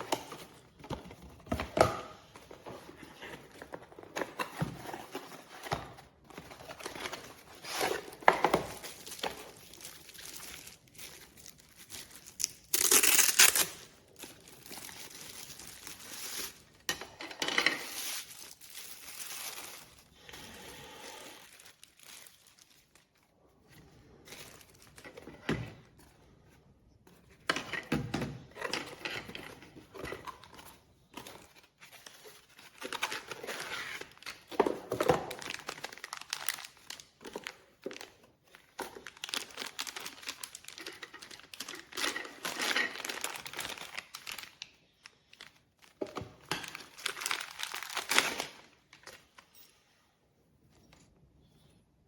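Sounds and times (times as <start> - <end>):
plastic packaging crinkling: 6.5 - 16.9, 17.7 - 23.5, 29.8 - 49.3.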